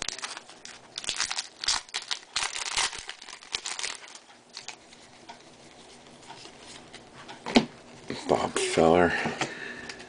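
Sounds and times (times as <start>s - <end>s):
foil wrapper crinkling: 0.0s - 5.1s.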